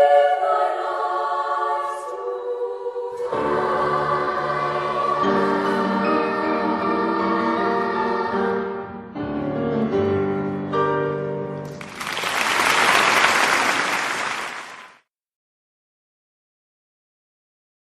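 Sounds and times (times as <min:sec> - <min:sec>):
choir singing held chords: 0:00.0 - 0:09.1
piano accompaniment: 0:03.4 - 0:13.8
applause: 0:11.7 - 0:15.1.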